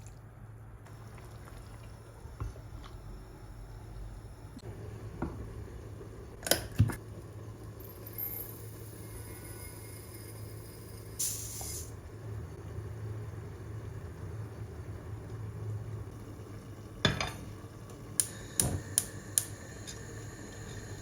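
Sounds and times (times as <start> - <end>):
short hiss: 11.2 - 11.9.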